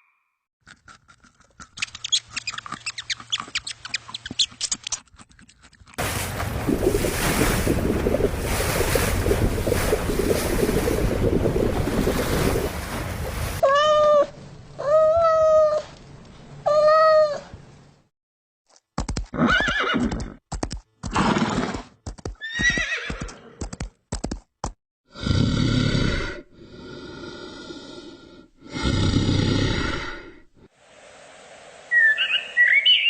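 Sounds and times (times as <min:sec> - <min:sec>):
wind: 0:00.0 - 0:18.1, 0:18.7 - 0:24.5, 0:25.1 - 0:33.0
animal snorting: 0:00.7 - 0:06.0
surf: 0:06.0 - 0:13.6.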